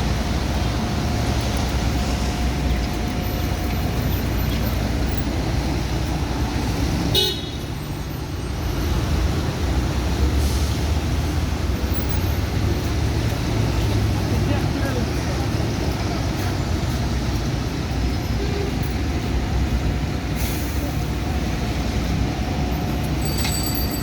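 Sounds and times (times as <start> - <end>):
road traffic rumbling: 0.0 - 24.0
car horn toot: 7.1 - 7.6.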